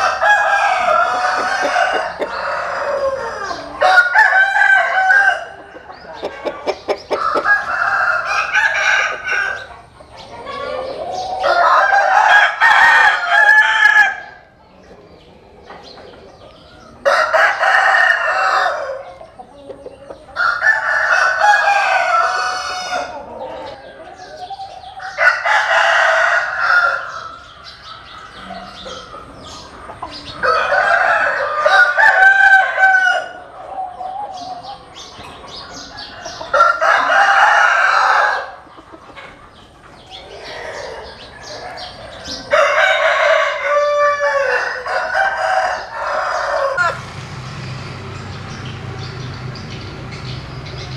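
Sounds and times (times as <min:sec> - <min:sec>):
roosters crowing: 0:00.0 - 0:50.9.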